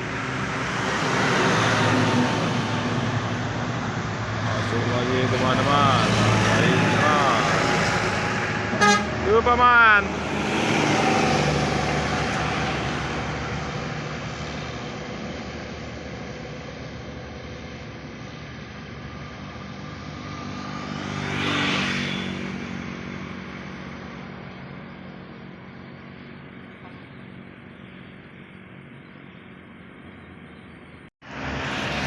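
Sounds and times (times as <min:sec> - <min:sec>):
vehicle passing: 0:00.0 - 0:26.7, 0:31.2 - 0:32.0
bus engine passing: 0:00.0 - 0:32.0
bus horn tune: 0:08.5 - 0:09.2.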